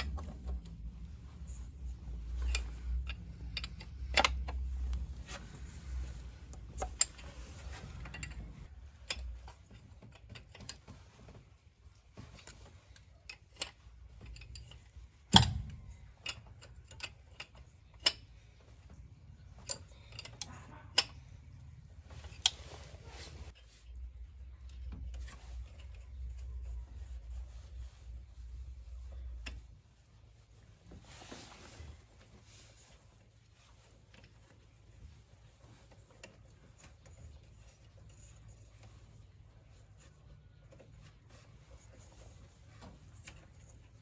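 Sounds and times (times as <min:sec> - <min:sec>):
metal parts clicking and knocking: 0:00.0 - 0:24.0, 0:31.3 - 0:44.0.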